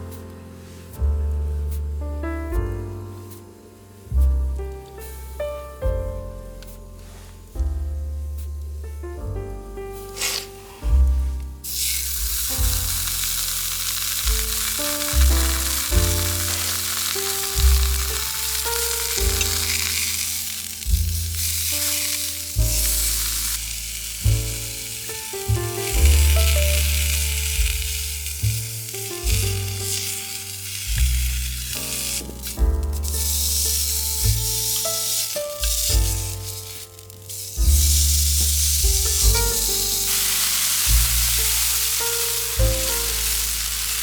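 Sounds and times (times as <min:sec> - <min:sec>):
food sizzling in a pan: 0:10.0 - 0:44.0.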